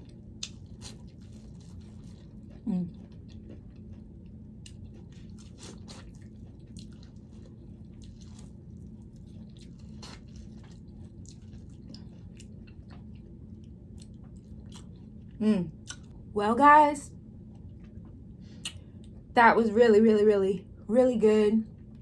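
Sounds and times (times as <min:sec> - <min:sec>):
close chewing of food: 0:00.0 - 0:16.2
steady low hum: 0:00.0 - 0:22.0
wet mouth clicks and smacks: 0:18.6 - 0:18.8.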